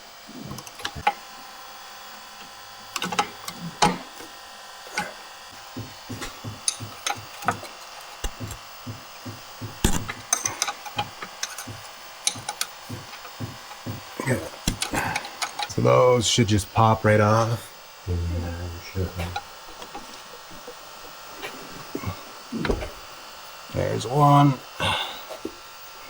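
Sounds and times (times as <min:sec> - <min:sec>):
sharp clicks and knocks: 0:00.4 - 0:01.2, 0:02.4 - 0:04.3, 0:04.9 - 0:15.8, 0:19.2 - 0:21.2
loud metal knocks: 0:08.3 - 0:14.1.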